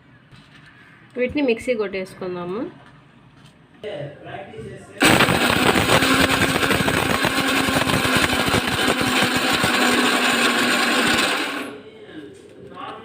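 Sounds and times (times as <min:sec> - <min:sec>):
mixer grinder grinding spices: 0:05.0 - 0:11.8.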